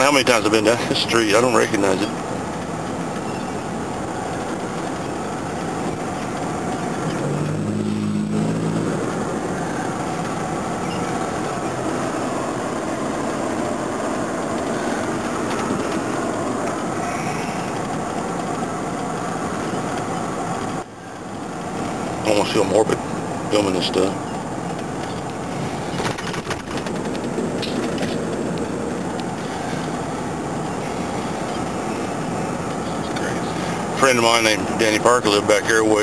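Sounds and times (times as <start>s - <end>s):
road and engine noise in car: 0.0s - 36.0s
low rising tone: 6.9s - 13.2s.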